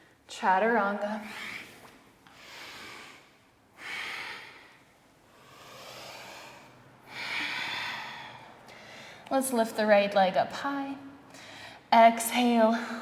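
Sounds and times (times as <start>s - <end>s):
person breathing: 1.2s - 9.3s, 11.3s - 11.9s.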